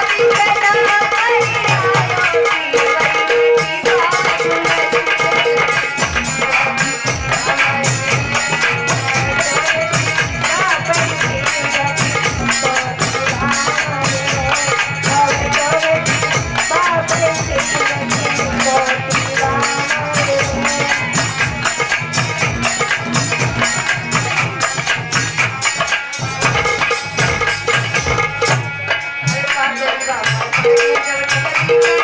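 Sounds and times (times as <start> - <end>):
jingling percussion: 0.0 - 32.0
hand drum beat: 3.8 - 29.7
wavering melody line: 20.5 - 29.0.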